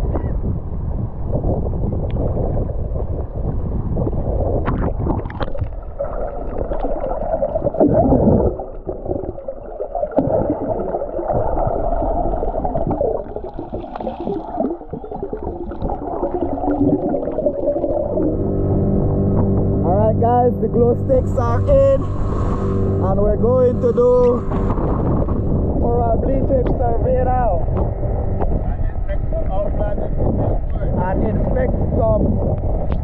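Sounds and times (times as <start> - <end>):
muffled underwater water movement: 0.0 - 33.0
bubbles gurgling: 3.9 - 19.5.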